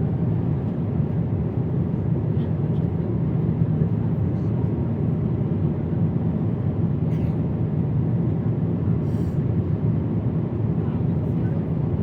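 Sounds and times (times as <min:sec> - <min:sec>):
airplane cabin engine rumble: 0:00.0 - 0:12.0.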